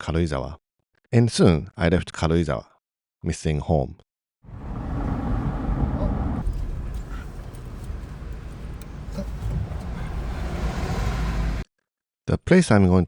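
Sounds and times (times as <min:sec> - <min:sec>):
car cabin rumble: 0:04.5 - 0:11.6.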